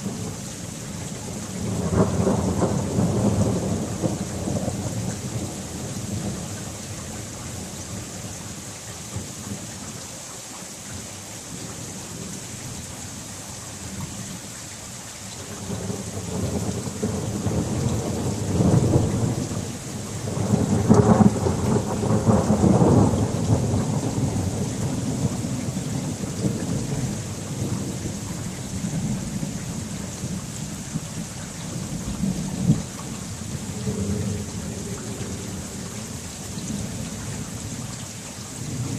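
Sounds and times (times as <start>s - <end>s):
steady rain: 0.0s - 38.9s
thunder rolling: 20.2s - 28.2s.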